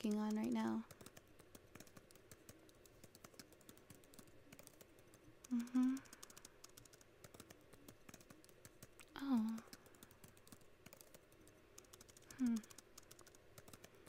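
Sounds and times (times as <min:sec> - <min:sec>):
keyboard typing: 0:00.0 - 0:14.0
person humming: 0:05.5 - 0:06.1, 0:09.1 - 0:09.7, 0:12.3 - 0:12.8.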